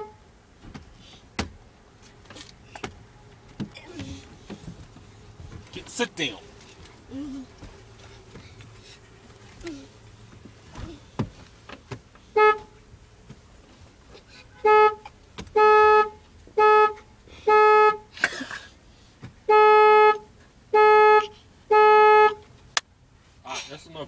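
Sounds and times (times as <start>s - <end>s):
car horn beeps: 0.0s - 0.3s, 12.3s - 12.8s, 14.4s - 18.2s, 19.4s - 22.5s.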